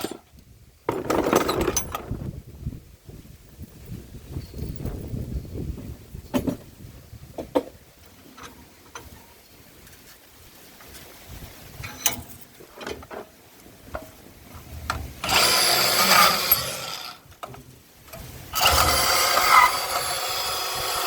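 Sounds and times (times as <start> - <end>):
band saw cutting metal: 15.2 - 17.2, 18.6 - 21.0.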